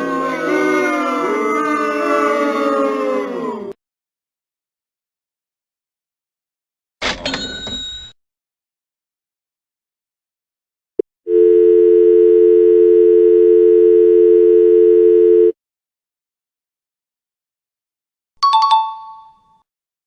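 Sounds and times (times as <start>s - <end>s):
telephone dial tone: 11.3s - 15.6s.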